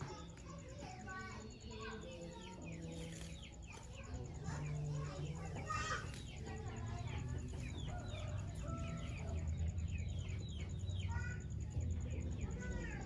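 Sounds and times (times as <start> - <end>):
chickens cheeping: 3.1 - 13.0.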